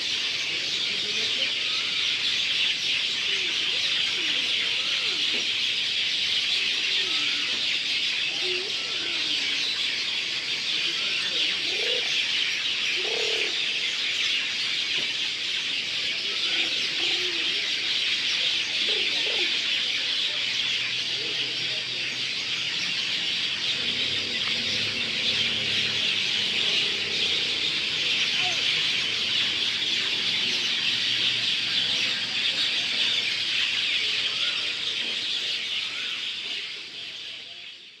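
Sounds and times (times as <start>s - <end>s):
lower bird calls: 0.0s - 37.5s
songbirds chirping and twittering: 0.0s - 38.0s.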